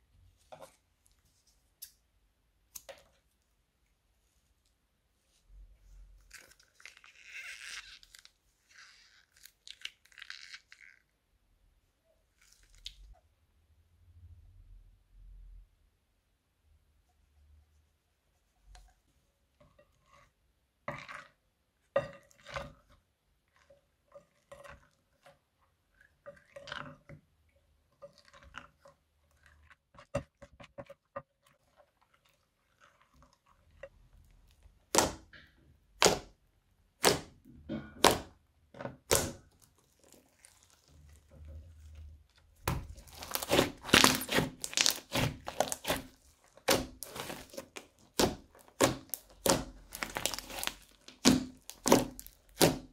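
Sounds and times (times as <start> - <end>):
crunchy slime crackling: 6.1 - 11.2, 39.0 - 52.9.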